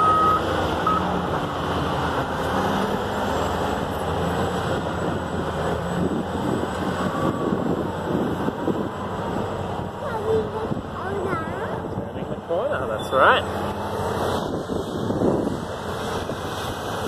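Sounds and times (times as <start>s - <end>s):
reversing beep: 0.0s - 1.2s
bulldozer diesel engines: 0.0s - 17.0s
wind on microphone: 6.0s - 9.8s, 14.2s - 17.0s.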